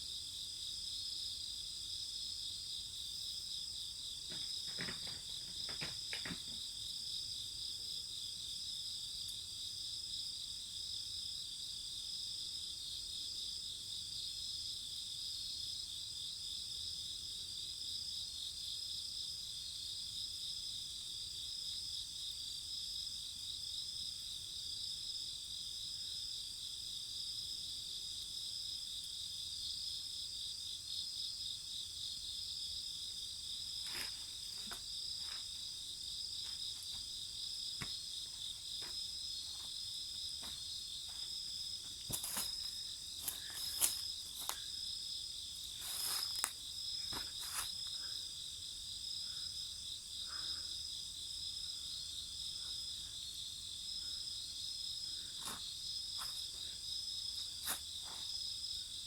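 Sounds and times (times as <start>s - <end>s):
crickets chirring: 0.0s - 59.0s.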